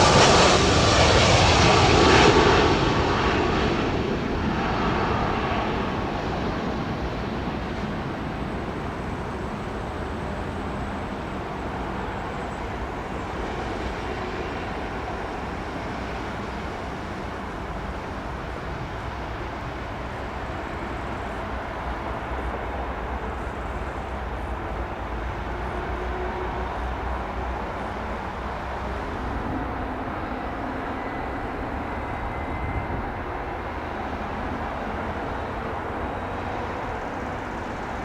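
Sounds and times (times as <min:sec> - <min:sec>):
jet engines rushing: 0:00.0 - 0:38.0.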